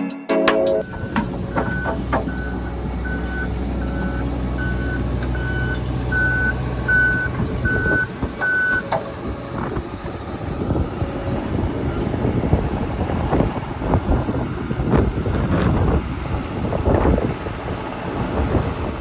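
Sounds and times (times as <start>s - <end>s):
excavator alarm beeping: 0.8s - 12.4s
diesel engine running: 0.8s - 19.0s
rough rumble: 0.8s - 19.0s.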